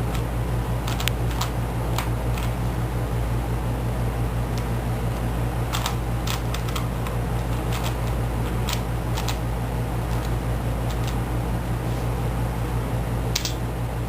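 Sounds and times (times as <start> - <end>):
low electrical hum: 0.0 - 14.0
puzzle cube plastic clicks: 0.1 - 2.6, 5.7 - 9.4, 10.1 - 11.2.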